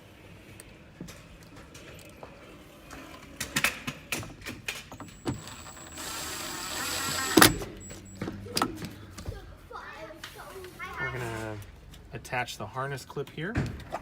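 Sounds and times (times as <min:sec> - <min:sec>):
small electric motor whirring: 0:05.0 - 0:08.2.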